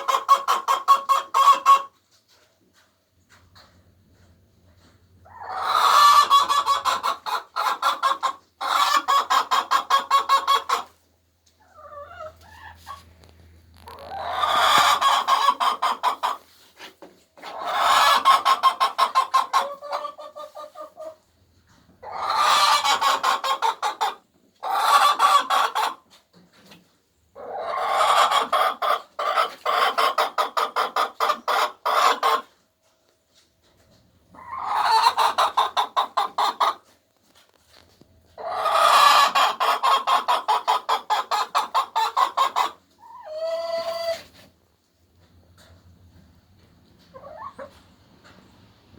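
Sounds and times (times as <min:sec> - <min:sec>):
hens cackling: 0:00.0 - 0:02.0, 0:05.2 - 0:26.2, 0:27.4 - 0:32.6, 0:34.2 - 0:36.9, 0:38.3 - 0:44.5, 0:46.9 - 0:48.5.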